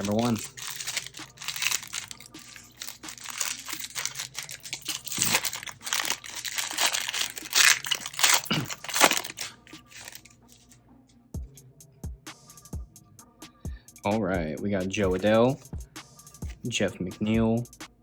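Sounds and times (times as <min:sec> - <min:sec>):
wrapper tearing and crinkling: 0:00.0 - 0:10.8.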